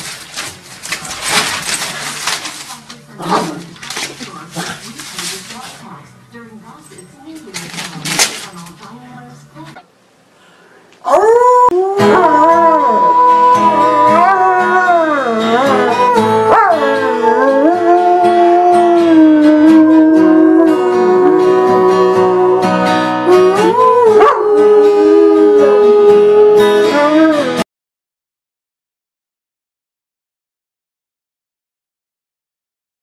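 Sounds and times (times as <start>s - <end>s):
dog howling: 11.0s - 27.6s
music: 11.8s - 27.6s.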